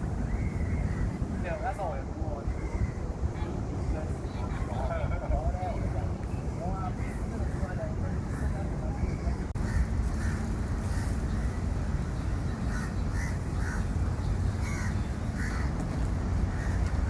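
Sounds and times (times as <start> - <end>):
crows cawing: 9.6 - 11.5, 12.7 - 13.9, 14.6 - 15.8, 16.5 - 17.0.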